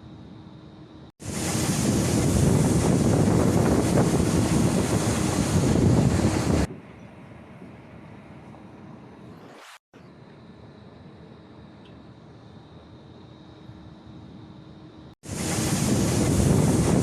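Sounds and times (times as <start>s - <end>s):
loud steady rushing noise: 1.2s - 9.8s, 15.2s - 17.0s.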